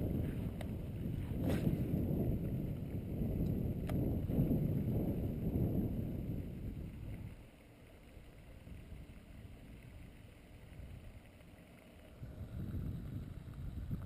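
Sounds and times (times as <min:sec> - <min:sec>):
wind buffeting microphone: 0:00.0 - 0:07.5, 0:12.1 - 0:14.0.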